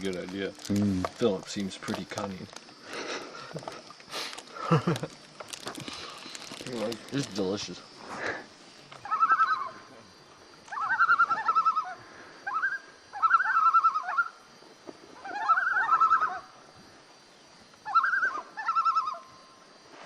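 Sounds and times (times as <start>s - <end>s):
loons tremolo calling: 9.0s - 10.0s, 10.7s - 14.5s, 15.2s - 16.6s, 17.8s - 19.5s.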